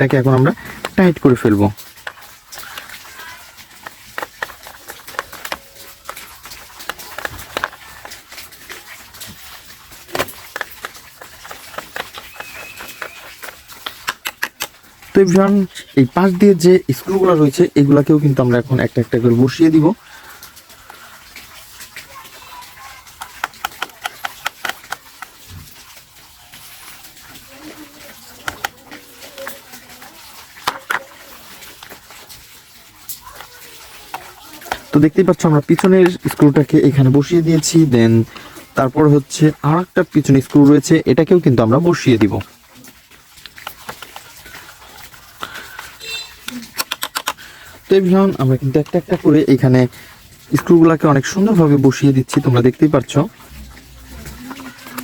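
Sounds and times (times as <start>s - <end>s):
screwdriver clicking and scraping: 3.9s - 8.2s, 10.1s - 14.7s, 46.8s - 47.4s
small ticks: 10.1s - 14.8s.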